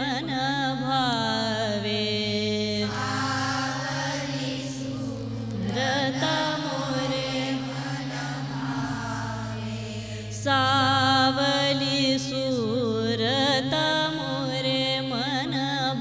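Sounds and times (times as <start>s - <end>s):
woman singing: 0.0s - 3.8s, 4.6s - 16.0s
steady drone: 2.6s - 14.8s.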